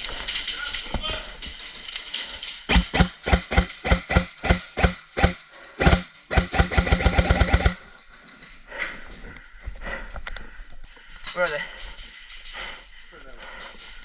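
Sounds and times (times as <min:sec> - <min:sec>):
airsoft gun firing: 0:02.7 - 0:07.8
gearbox motor whir: 0:02.7 - 0:07.8.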